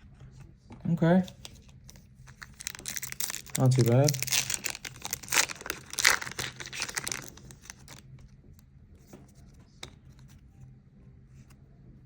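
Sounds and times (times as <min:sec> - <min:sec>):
foil wrapper crinkling and tearing: 0:01.8 - 0:08.0.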